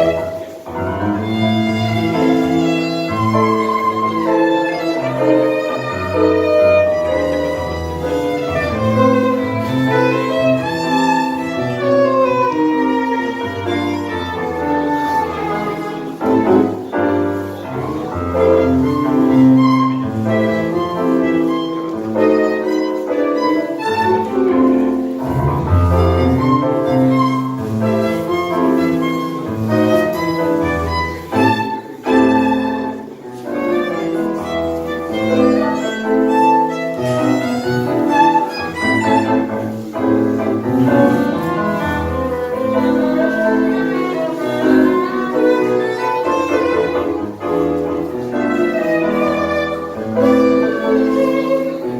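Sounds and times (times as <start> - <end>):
piano: 0.0 - 51.9
violin melody: 0.0 - 51.9
bass: 25.2 - 27.2.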